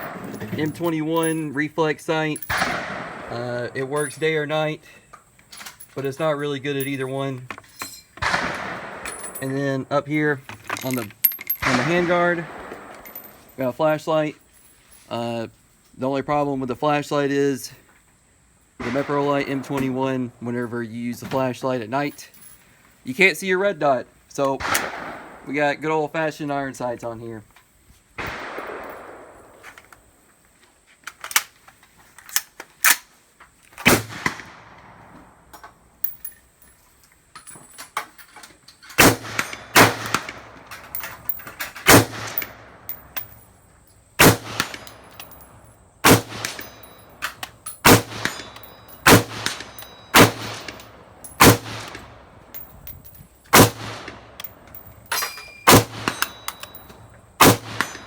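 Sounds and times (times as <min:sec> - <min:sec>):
rifle gunshots: 0:00.0 - 0:01.4, 0:02.4 - 0:03.9, 0:08.2 - 0:09.8, 0:11.5 - 0:13.4, 0:18.8 - 0:20.2, 0:24.6 - 0:25.5, 0:28.2 - 0:29.7, 0:33.8 - 0:35.1, 0:39.0 - 0:43.2, 0:44.2 - 0:52.6, 0:53.5 - 0:54.6, 0:55.7 - 0:58.0.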